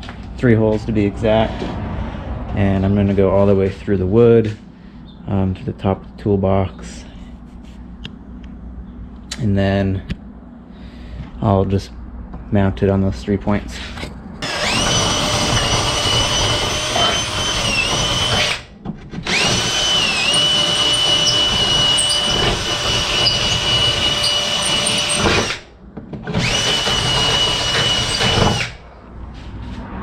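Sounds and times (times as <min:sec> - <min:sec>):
electric drill boring wood: 0:14.4 - 0:25.7, 0:26.3 - 0:28.8.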